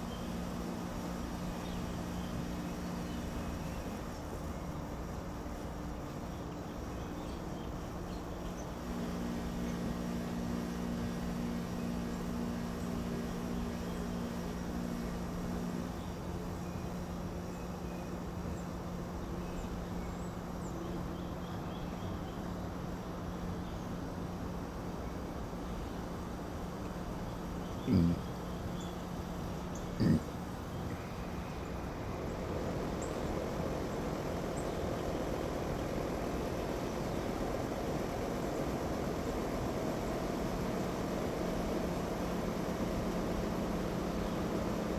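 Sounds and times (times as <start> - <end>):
faint bird chirps: 0.0 - 4.9
constant low hum: 0.0 - 44.9
faint birds chirping: 0.0 - 44.9.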